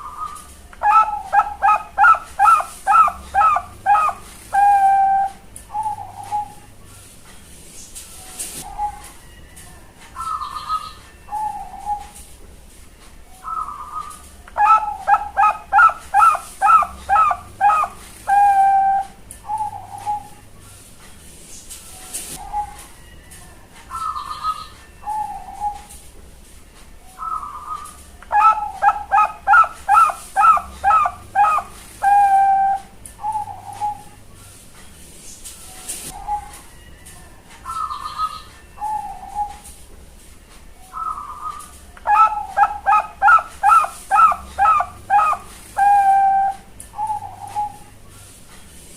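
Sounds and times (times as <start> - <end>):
dove cooing: 0.0 - 6.7, 8.6 - 9.2, 10.2 - 12.2, 13.4 - 20.5, 22.4 - 22.9, 23.9 - 25.9, 27.2 - 34.2, 36.1 - 36.7, 37.6 - 39.8, 40.9 - 48.0.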